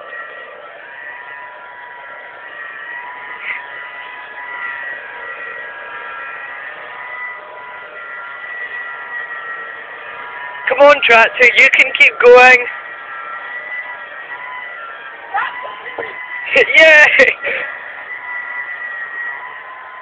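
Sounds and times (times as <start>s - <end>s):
high-pitched whine: 0.0s - 20.0s
tractor engine under load: 0.0s - 20.0s.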